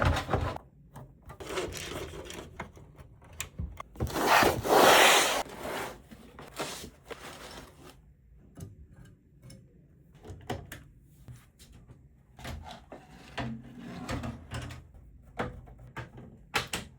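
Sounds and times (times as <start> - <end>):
rubbing scrape: 4.1 - 6.0.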